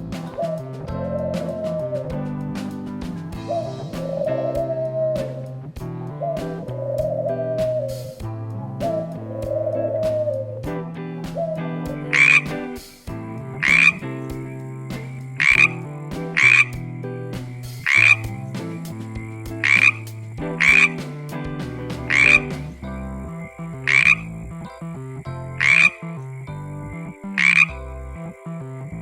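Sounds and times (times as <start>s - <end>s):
light background music: 0.0s - 29.0s
frog croaking: 11.4s - 21.1s, 21.7s - 29.0s.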